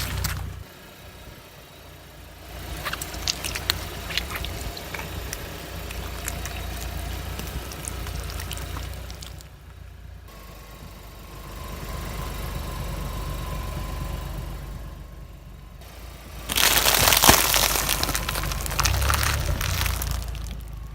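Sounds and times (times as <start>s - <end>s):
car engine idling: 0.0s - 20.9s
faint crackles: 2.6s - 9.8s, 16.5s - 20.8s.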